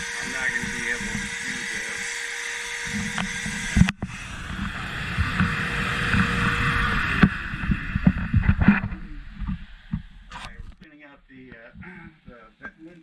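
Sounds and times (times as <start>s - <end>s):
shop vac hissing rush: 0.0s - 7.2s.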